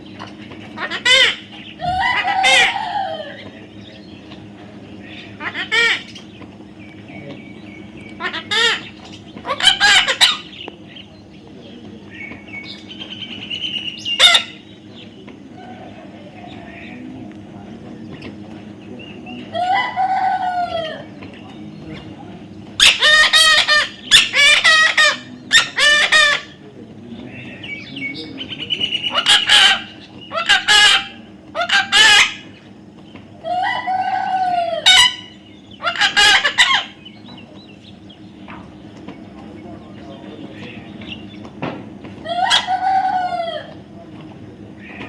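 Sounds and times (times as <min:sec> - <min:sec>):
bird calling loudly: 0:00.0 - 0:04.4, 0:05.0 - 0:11.3, 0:12.0 - 0:17.0, 0:22.7 - 0:26.6, 0:27.3 - 0:39.3, 0:42.2 - 0:43.9.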